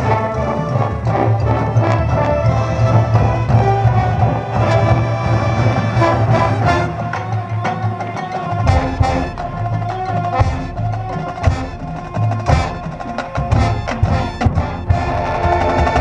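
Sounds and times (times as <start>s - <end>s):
marching band playing: 0.0s - 16.0s
drum and mallet percussion hits: 6.0s - 16.0s.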